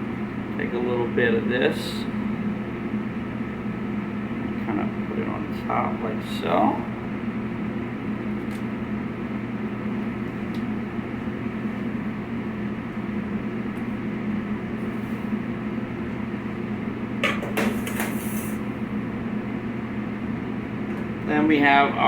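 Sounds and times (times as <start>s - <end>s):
kitchen ventilation hum: 0.0s - 22.0s
utensils and dishes clattering: 17.3s - 18.6s.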